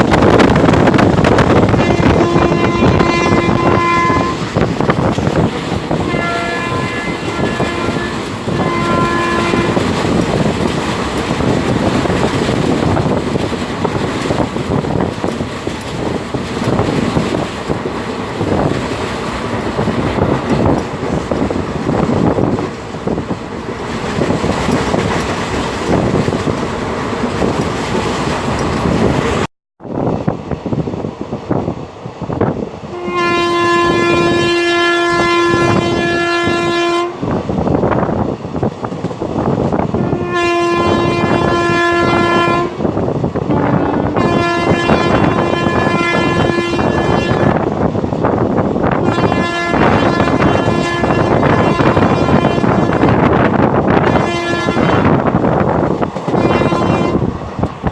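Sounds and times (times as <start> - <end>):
train rushing and rail clatter: 0.0 - 57.9
locomotive horn blasts: 1.6 - 4.6, 5.9 - 10.0, 32.9 - 37.4, 39.9 - 47.8, 48.9 - 55.3, 56.3 - 57.3
lower-pitched horn toot: 1.7 - 4.5, 6.0 - 9.9, 32.9 - 37.3, 39.9 - 42.9, 43.5 - 47.6, 49.0 - 53.3, 54.0 - 55.2, 56.4 - 57.3.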